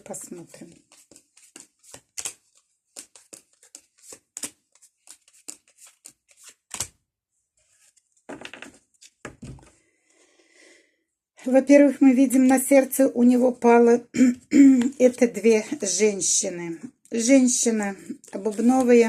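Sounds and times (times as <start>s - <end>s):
cards rustling: 0.7s - 6.9s, 18.3s - 19.0s.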